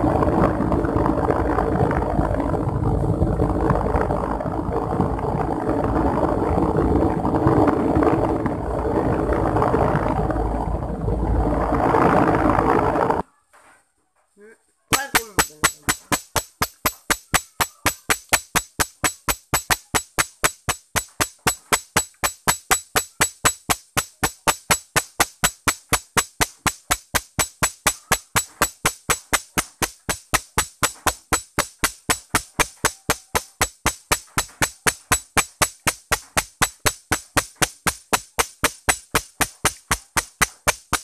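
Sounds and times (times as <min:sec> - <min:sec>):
sharp even knocks: 0:14.9 - 0:41.0.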